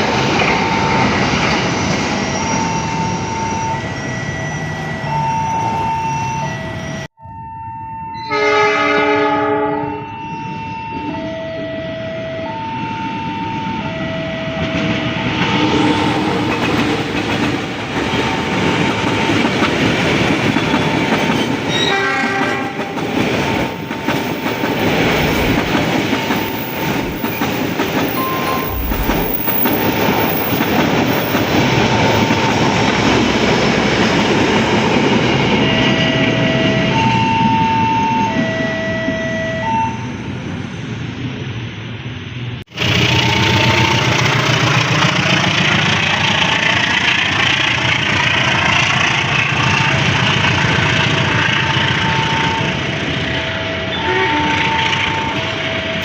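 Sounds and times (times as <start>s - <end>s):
train wheels clattering on rails: 0.0s - 3.3s, 14.6s - 37.8s, 42.8s - 53.2s
two-tone crossing alarm: 0.0s - 17.5s, 18.1s - 40.3s, 48.7s - 56.0s
train horn: 8.2s - 10.2s, 15.4s - 16.6s, 21.7s - 23.8s, 42.8s - 44.7s, 49.4s - 56.0s.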